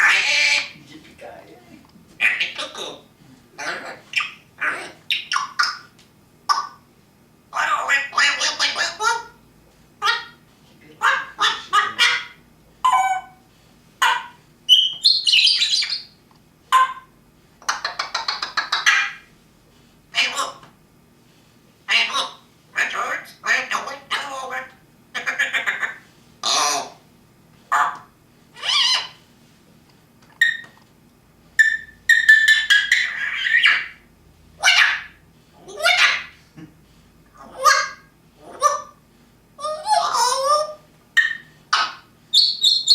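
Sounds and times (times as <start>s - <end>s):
parrot squawking and chattering: 0.0s - 0.8s, 2.2s - 5.9s, 6.5s - 6.8s, 7.5s - 9.4s, 10.0s - 10.4s, 11.0s - 19.3s, 20.1s - 20.7s, 21.9s - 27.0s, 27.7s - 29.2s, 30.4s - 30.8s, 31.6s - 36.5s, 37.3s - 39.0s, 39.6s - 42.9s
parrot whistle: 14.0s - 17.1s, 28.6s - 29.2s, 30.4s - 30.8s, 31.6s - 34.0s, 39.6s - 42.9s.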